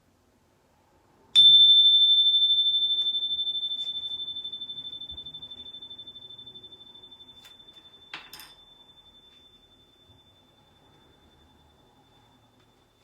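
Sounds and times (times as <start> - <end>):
small bell ringing: 1.4 - 13.0.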